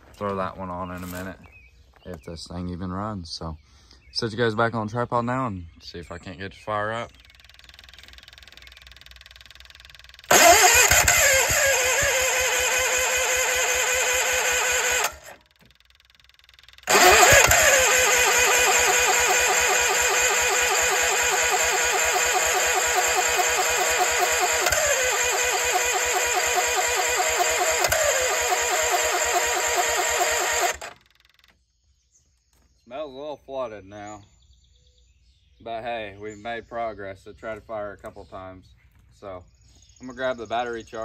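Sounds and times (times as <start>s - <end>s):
engine cranking with starter: 7.0s - 31.6s.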